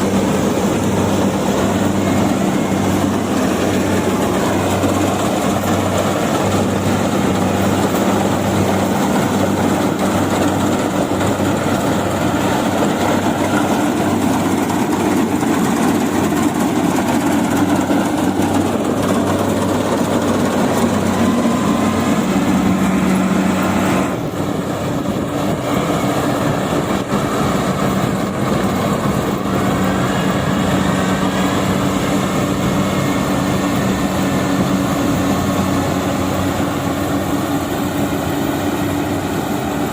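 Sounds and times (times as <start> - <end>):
diesel engine hum: 0.0 - 39.9
threshing machinery clatter: 0.0 - 39.9.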